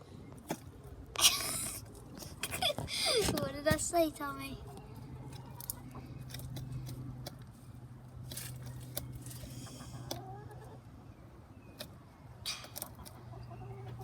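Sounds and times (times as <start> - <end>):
sharp clicks and scuffling: 1.6 - 4.0
chickens calling softly: 8.6 - 14.0.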